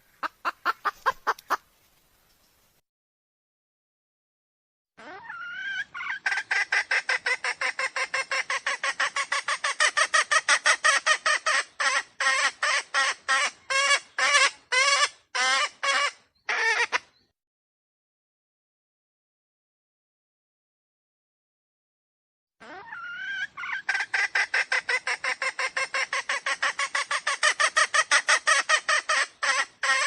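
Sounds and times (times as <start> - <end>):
junglefowl rapid repeated calls: 0.0 - 1.7, 5.0 - 17.1, 22.6 - 30.0.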